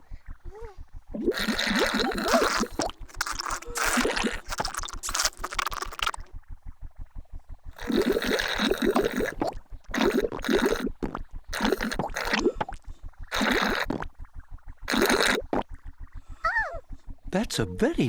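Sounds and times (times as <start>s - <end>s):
gurgling drinking slurps: 1.2s - 6.3s, 7.8s - 14.1s, 14.9s - 15.6s
low pulsing hum: 15.5s - 18.0s.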